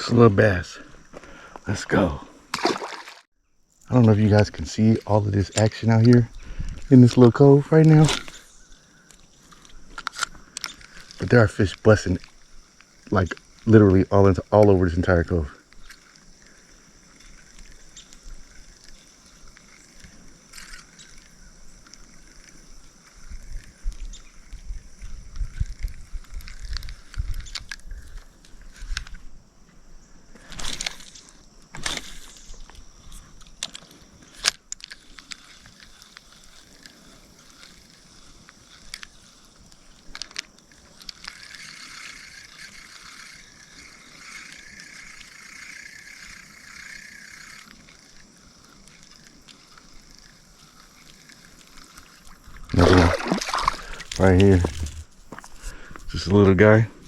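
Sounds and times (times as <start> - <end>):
fishing reel being cranked: 3.9 - 29.2, 30.5 - 55.4
wind rumbling on microphone: 4.0 - 8.2, 22.8 - 29.4.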